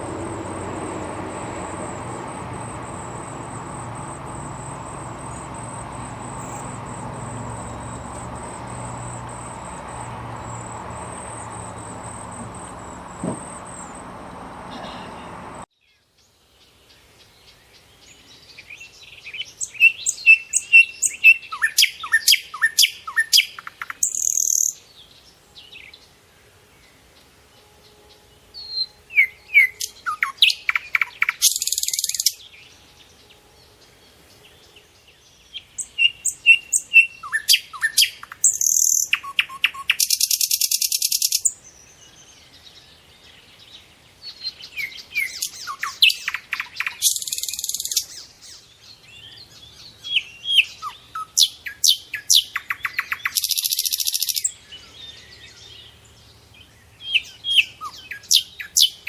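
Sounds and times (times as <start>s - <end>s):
harsh bird buzz: 0.0s - 15.6s
songbird chirps and whistles: 1.4s - 15.6s.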